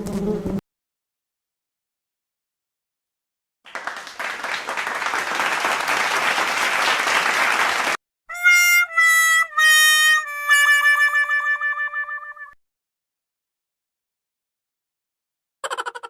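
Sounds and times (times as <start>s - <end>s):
clapping-like noise: 3.7s - 8.0s
sad trombone comedy effect: 8.3s - 12.6s.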